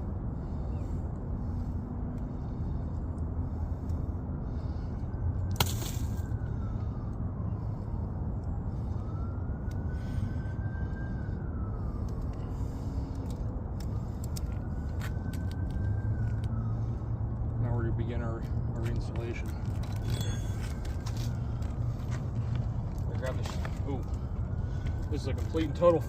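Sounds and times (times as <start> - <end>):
distant siren wailing: 0.0 - 26.0
steady low rumble: 0.0 - 26.0.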